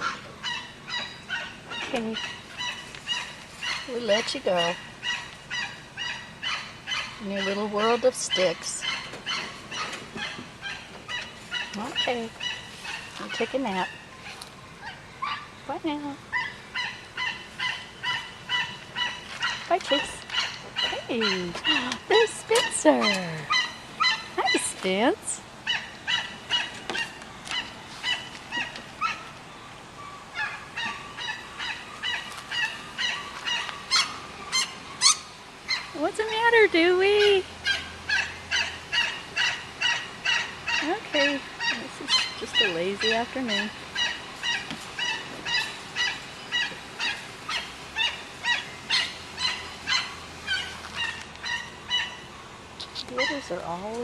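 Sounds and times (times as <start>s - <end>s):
animal barking calls: 0.0s - 53.7s
animal barking high-pitched: 4.5s - 13.5s, 16.3s - 24.7s.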